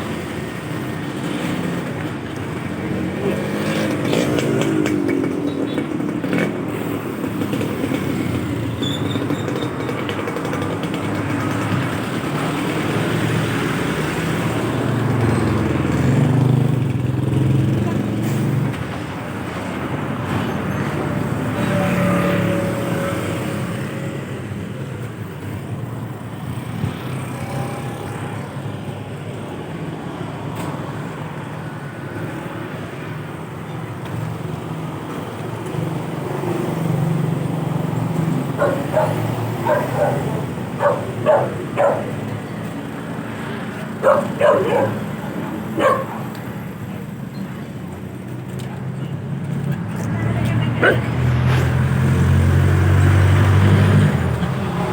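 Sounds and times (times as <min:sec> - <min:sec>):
street traffic rumbling: 0:00.0 - 0:54.9
dog barking: 0:38.4 - 0:42.5, 0:44.0 - 0:46.4, 0:50.8 - 0:51.2.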